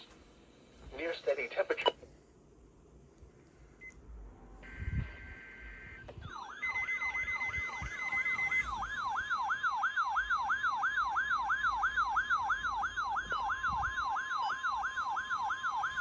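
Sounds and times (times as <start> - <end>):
electronic alert siren: 4.6 - 16.0.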